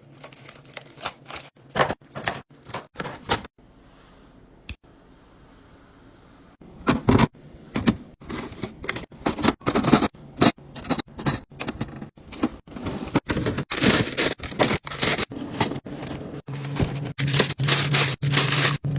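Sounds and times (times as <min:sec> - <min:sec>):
plastic packaging rustling: 0:00.0 - 0:01.6, 0:13.1 - 0:15.5, 0:16.5 - 0:18.9
low steady hum: 0:03.6 - 0:18.7.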